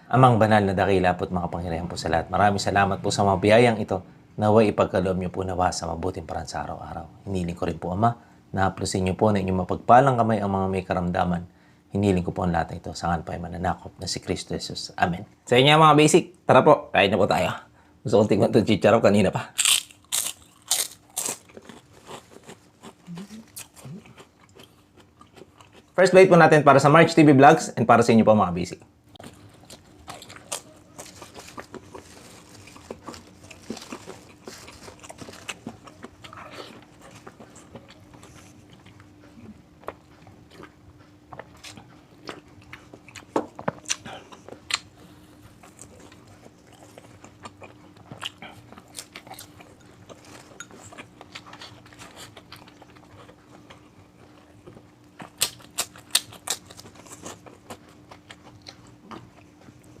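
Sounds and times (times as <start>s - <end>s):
chewing crispy fried food: 19.4s - 26.2s, 29.1s - 60.0s.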